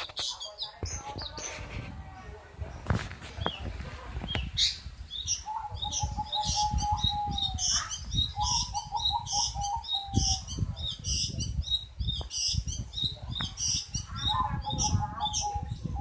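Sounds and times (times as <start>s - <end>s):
bird high chirping notes: 4.5s - 16.0s.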